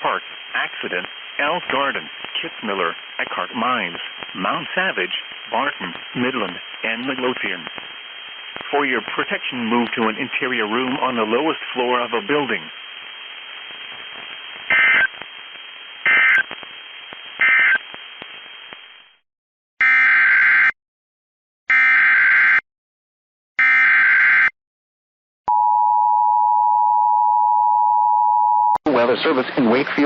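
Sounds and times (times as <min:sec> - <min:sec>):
radio hiss: 0:00.0 - 0:19.2, 0:28.9 - 0:30.0
digital data bursts: 0:14.7 - 0:15.2, 0:16.0 - 0:16.5.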